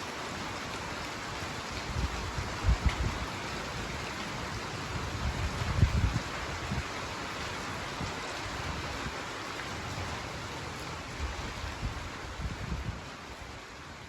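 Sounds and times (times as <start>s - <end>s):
wind buffeting microphone: 1.7s - 3.3s, 4.9s - 6.9s, 11.2s - 13.1s.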